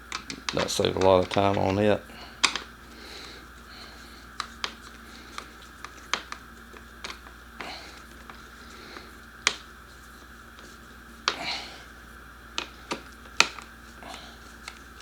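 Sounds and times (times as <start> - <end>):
tools and parts clicking: 0.0 - 1.8, 2.4 - 2.7
faint steady hum: 0.0 - 15.0.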